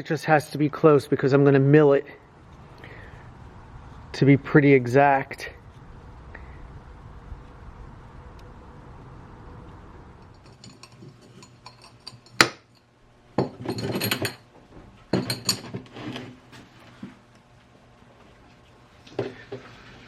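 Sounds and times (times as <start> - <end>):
metal parts rattling and scraping: 10.3 - 14.5, 15.1 - 16.8
metal parts clinking on workbench: 10.4 - 14.4, 15.1 - 15.8.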